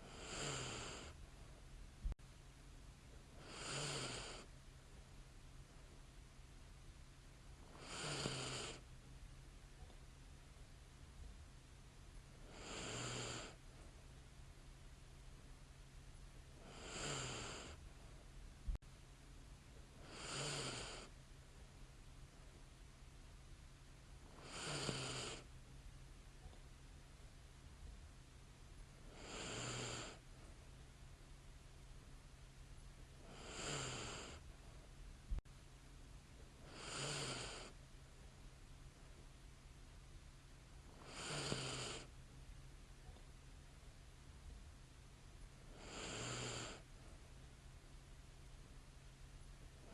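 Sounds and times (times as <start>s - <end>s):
woman snoring lightly: 0.0s - 1.2s, 3.4s - 4.5s, 7.7s - 8.9s, 12.4s - 13.6s, 16.6s - 17.8s, 20.0s - 21.1s, 24.3s - 25.5s, 29.1s - 30.2s, 33.2s - 34.4s, 36.6s - 37.8s, 41.0s - 42.1s, 45.7s - 46.8s
woman breathing in sleep: 0.0s - 1.6s, 3.4s - 4.5s, 16.6s - 17.8s, 20.0s - 21.1s, 33.2s - 34.4s, 45.7s - 47.2s
faint steady hum: 0.0s - 49.9s.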